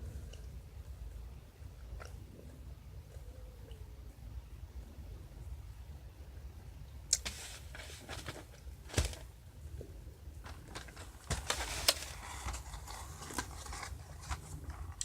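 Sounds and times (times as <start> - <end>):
wrapping rustling: 7.2 - 9.3, 10.4 - 15.0.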